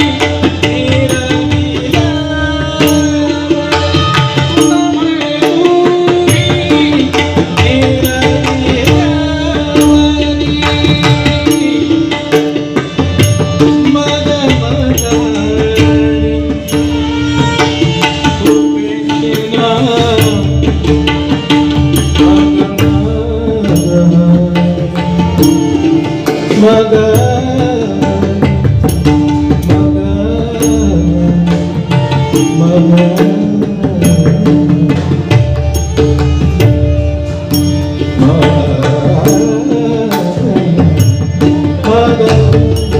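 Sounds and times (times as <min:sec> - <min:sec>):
harmonium melody: 0:00.0 - 0:42.9
tabla rhythm: 0:00.0 - 0:42.9.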